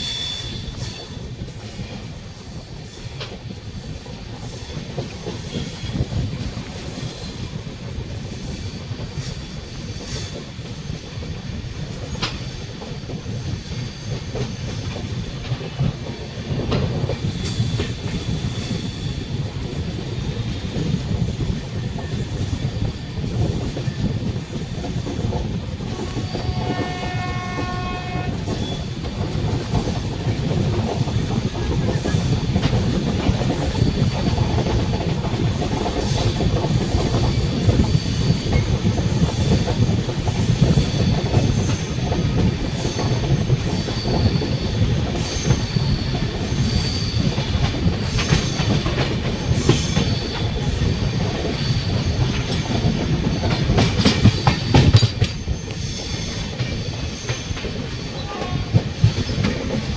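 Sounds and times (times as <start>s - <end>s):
train wheels clickety-clack: 0.0s - 59.9s
locomotive horn: 25.9s - 28.5s
wheel squeal: 42.8s - 48.9s, 49.5s - 59.7s.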